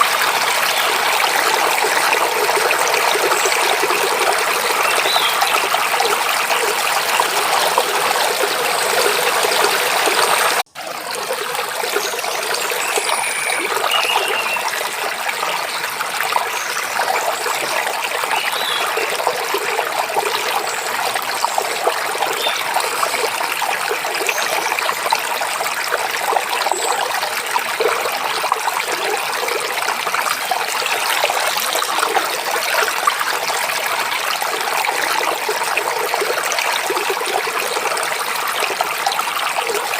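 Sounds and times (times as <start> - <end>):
stream rushing over rocks: 0.0 - 39.9
faint bird chirps: 12.1 - 14.8.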